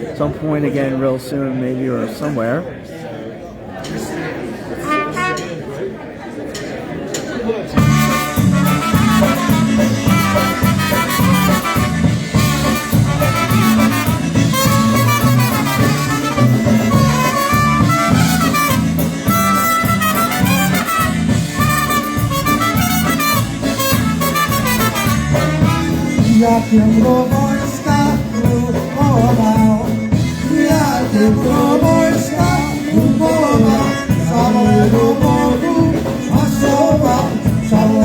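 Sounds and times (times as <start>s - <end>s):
polka band playing: 4.7s - 5.8s, 7.7s - 38.0s
horn melody: 4.8s - 5.7s, 7.8s - 38.0s
oom-pah bass beat: 7.8s - 38.0s
person singing: 26.0s - 38.0s.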